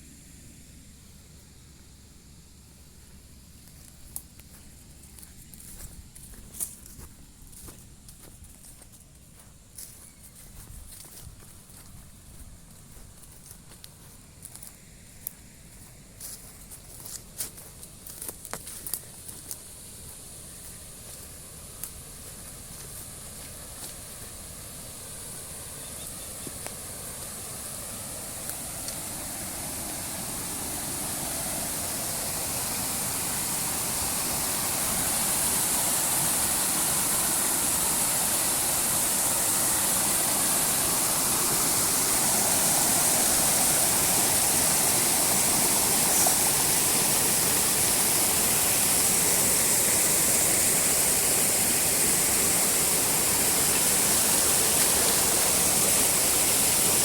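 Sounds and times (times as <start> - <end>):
water rushing over a dam: 20.2 - 57.0.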